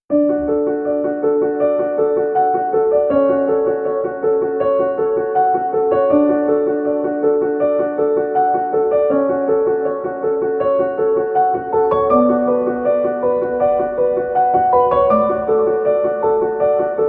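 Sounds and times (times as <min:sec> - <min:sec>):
keyboard playing repeating notes: 0:00.1 - 0:17.0.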